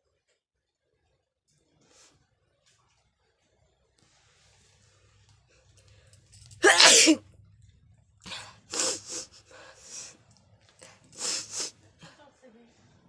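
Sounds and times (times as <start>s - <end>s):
woman sneezing: 6.6s - 7.2s
weak bursts of breath: 8.3s - 10.2s, 10.8s - 11.8s.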